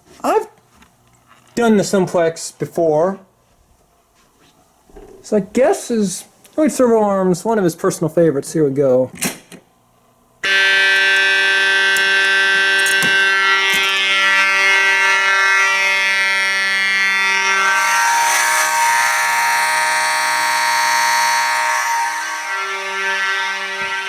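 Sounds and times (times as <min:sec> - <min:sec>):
fire alarm horns blaring: 0:10.4 - 0:24.0.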